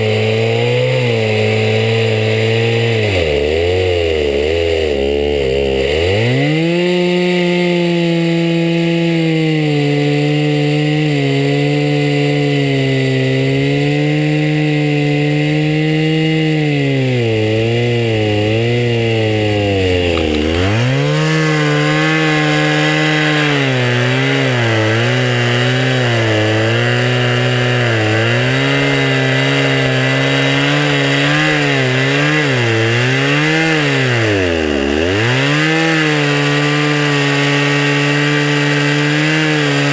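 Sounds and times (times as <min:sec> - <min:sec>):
chainsaw sawing wood: 0:00.0 - 0:39.9.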